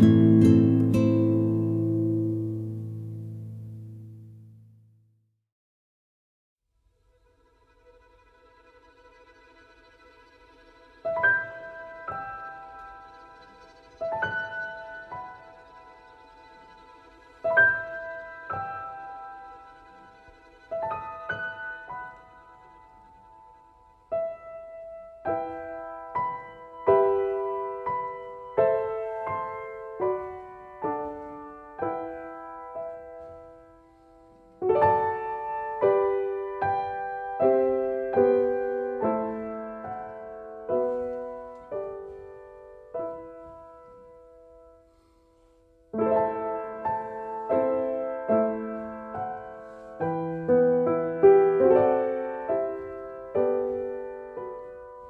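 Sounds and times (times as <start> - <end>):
slow solo piano: 20.8 - 55.0.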